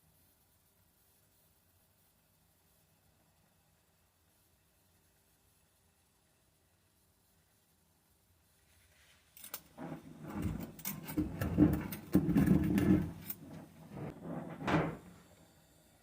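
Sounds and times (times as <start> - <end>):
metal tools handled and set down: 9.4 - 13.6.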